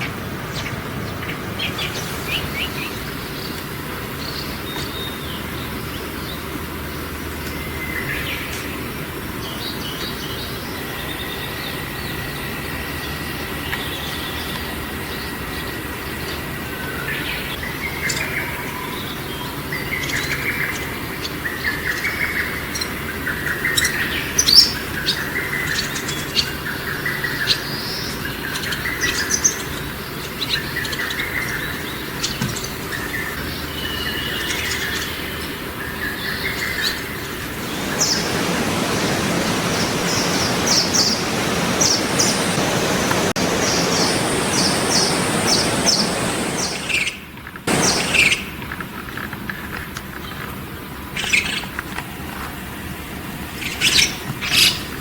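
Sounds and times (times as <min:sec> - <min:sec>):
steady rushing noise: 0:00.0 - 0:04.1, 0:37.5 - 0:48.5
songbirds chirping: 0:00.0 - 0:08.8, 0:17.1 - 0:48.6.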